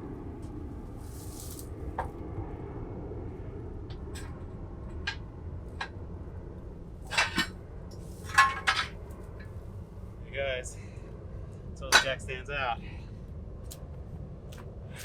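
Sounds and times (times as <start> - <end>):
metal jack stands clanking: 7.1 - 7.5, 8.2 - 9.0, 11.9 - 12.2
metallic ring: 7.1 - 9.5.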